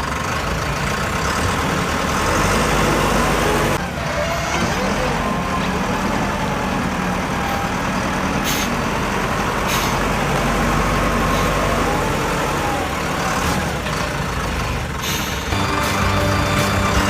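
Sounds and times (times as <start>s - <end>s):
road traffic noise: 0.0s - 17.0s
truck engine running: 0.0s - 17.0s.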